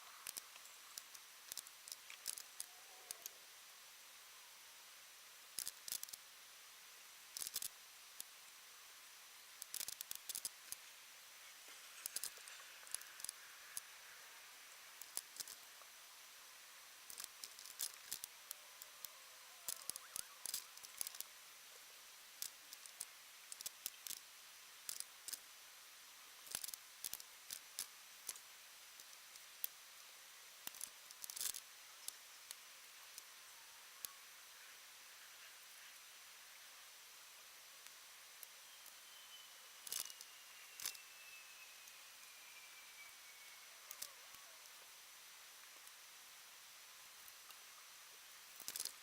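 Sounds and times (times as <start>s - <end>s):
faint high-pitched tone: 18.3s - 21.2s, 38.4s - 45.1s.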